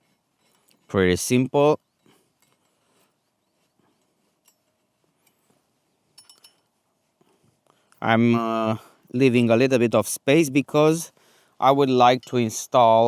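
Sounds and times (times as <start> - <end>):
faint metallic clicks: 7.9 - 8.1, 9.1 - 9.5.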